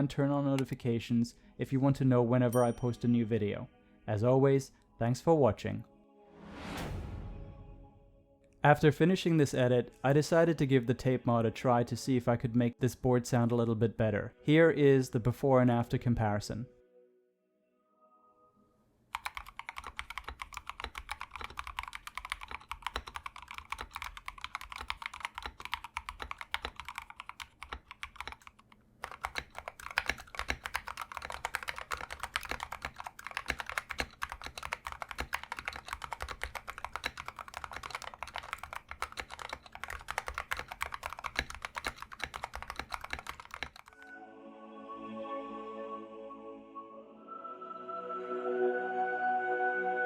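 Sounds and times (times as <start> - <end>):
mechanical keyboard typing: 19.1 - 44.0.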